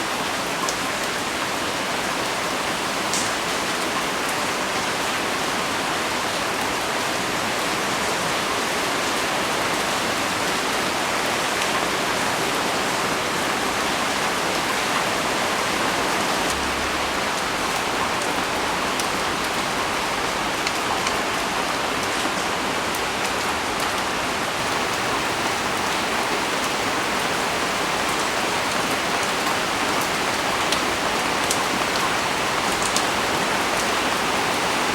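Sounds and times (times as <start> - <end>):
heavy rain pouring: 24.6 - 34.9
raindrops pattering on leaves: 24.6 - 34.9.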